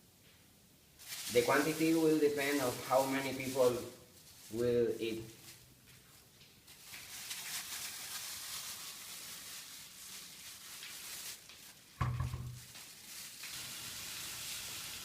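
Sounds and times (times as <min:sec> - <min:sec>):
meat sizzling in a frying pan: 0:06.9 - 0:15.0.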